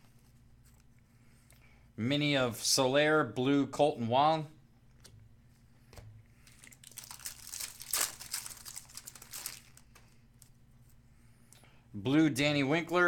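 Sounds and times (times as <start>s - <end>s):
wrapper crinkling and tearing: 6.5s - 10.5s.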